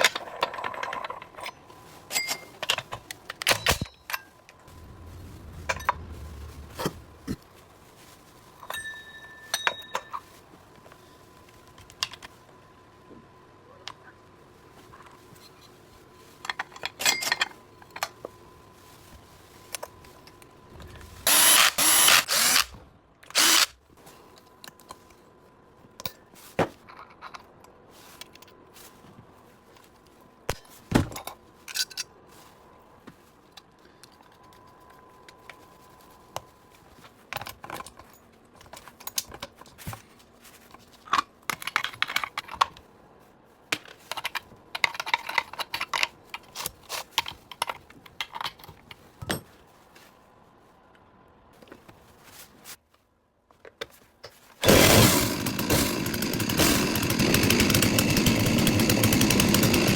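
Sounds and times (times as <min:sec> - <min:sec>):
loud hiss: 0:04.7 - 0:07.4, 0:21.2 - 0:22.8
tools handled on a workbench: 0:43.7 - 0:50.0.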